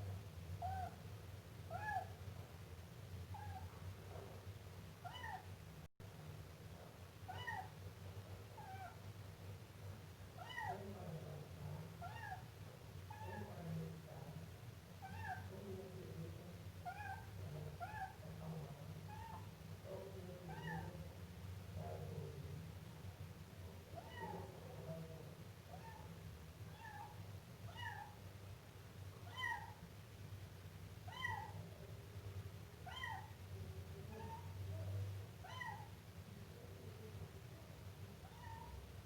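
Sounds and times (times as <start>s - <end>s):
kitten meowing: 29.2s - 29.8s, 31.1s - 31.6s, 32.9s - 33.3s, 35.4s - 35.9s, 38.2s - 38.8s.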